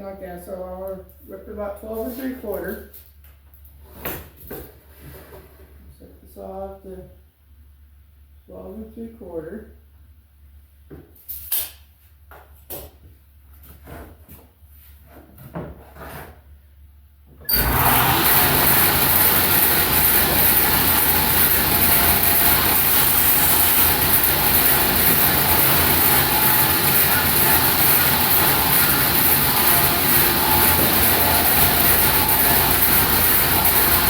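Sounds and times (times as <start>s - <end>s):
table saw running: 17.5s - 34.0s.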